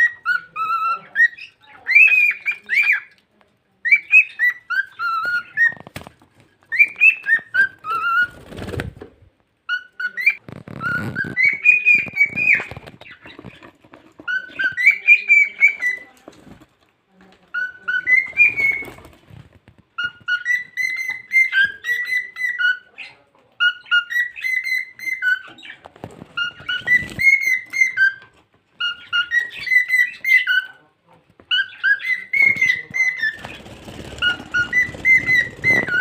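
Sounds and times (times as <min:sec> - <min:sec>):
cockatiel whistling a tune: 0:03.8 - 0:05.9, 0:06.7 - 0:08.4, 0:09.7 - 0:12.8, 0:14.2 - 0:16.1, 0:17.6 - 0:19.0, 0:20.0 - 0:22.9, 0:23.6 - 0:25.7, 0:26.4 - 0:30.7, 0:34.2 - 0:36.0
rustling: 0:10.1 - 0:21.0, 0:31.3 - 0:36.0.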